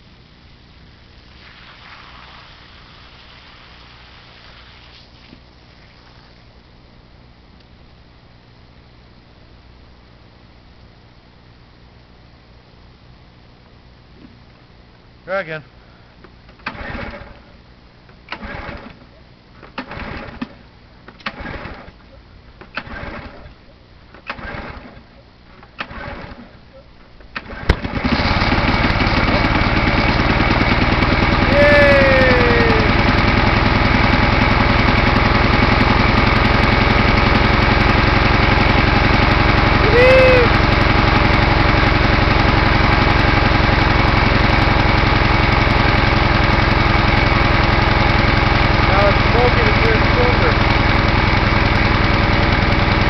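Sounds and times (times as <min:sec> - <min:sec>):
engine recoil starter pulls: 0:16.3 - 0:17.5, 0:18.1 - 0:53.0
small petrol engine running: 0:16.6 - 0:17.5, 0:18.3 - 0:19.1, 0:19.8 - 0:20.6, 0:21.2 - 0:22.0, 0:22.7 - 0:23.5, 0:24.2 - 0:25.1, 0:25.8 - 0:26.6, 0:27.4 - 0:53.0.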